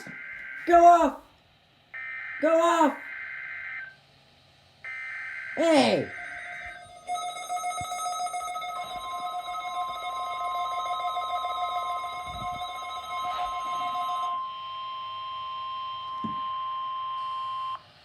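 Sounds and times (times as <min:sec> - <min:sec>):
high pure alert tone: 0:04.9 - 0:14.8
buzzy alert tone: 0:05.6 - 0:14.4.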